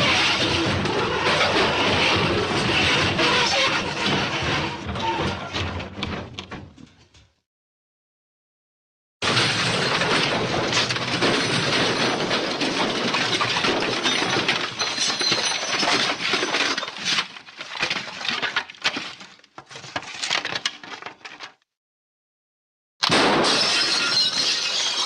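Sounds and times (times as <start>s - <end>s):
glass smashing and wood splintering: 9.2s - 21.0s, 23.0s - 25.0s
tinkling clattering debris: 11.3s - 17.2s.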